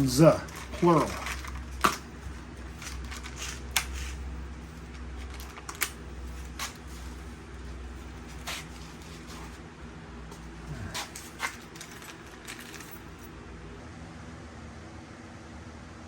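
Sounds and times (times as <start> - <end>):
steady low hum: 0.0 - 16.0
lock parts clicking: 0.4 - 6.9, 10.9 - 13.3.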